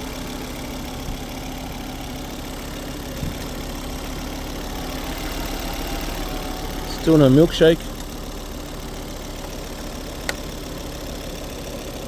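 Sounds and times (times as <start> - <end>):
car engine idling: 0.0 - 12.0
faint engine knocks: 3.1 - 3.7, 9.3 - 10.6.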